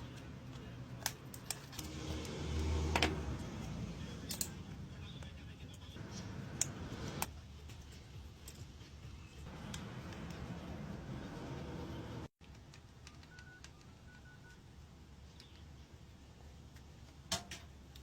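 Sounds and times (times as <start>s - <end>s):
small tools clicking and tapping: 3.0s - 4.6s.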